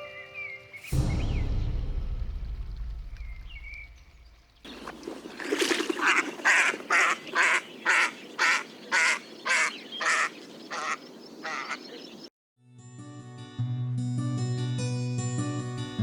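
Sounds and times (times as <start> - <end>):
waterfowl honking: 4.7 - 12.0.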